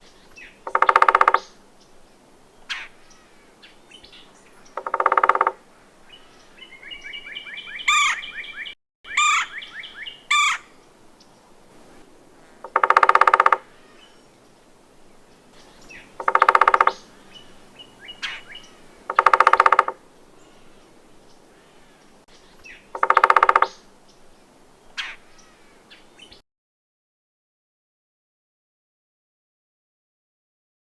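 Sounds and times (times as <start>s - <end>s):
woodpecker rolling churr call: 0.4s - 1.6s, 2.7s - 10.8s, 12.5s - 14.3s, 15.5s - 20.9s, 21.5s - 23.9s, 25.0s - 25.7s.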